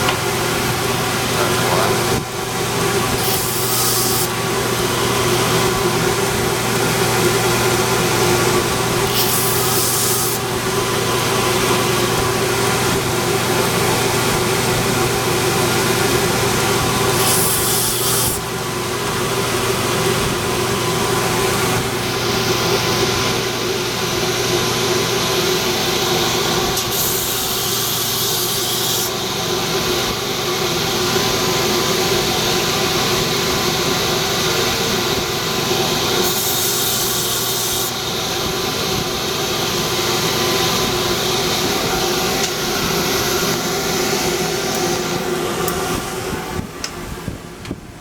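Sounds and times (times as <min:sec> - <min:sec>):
electric sanding machine running: 0:00.0 - 0:46.3
harsh hiss of grinding: 0:01.0 - 0:05.8.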